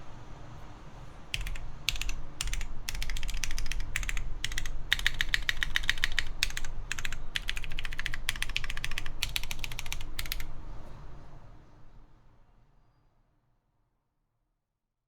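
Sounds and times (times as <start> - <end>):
mechanical keyboard typing: 1.4 - 10.7.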